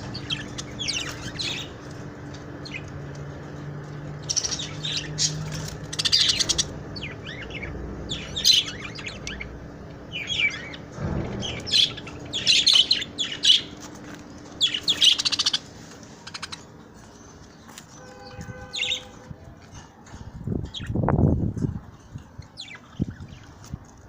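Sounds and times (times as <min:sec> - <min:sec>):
budgerigars chirping: 0:00.0 - 0:01.9, 0:04.2 - 0:13.8, 0:14.6 - 0:16.6.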